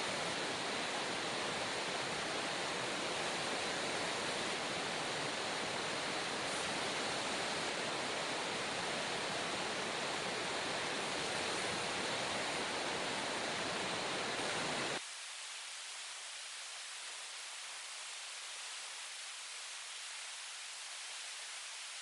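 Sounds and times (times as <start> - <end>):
fast-flowing river: 0.0 - 15.0.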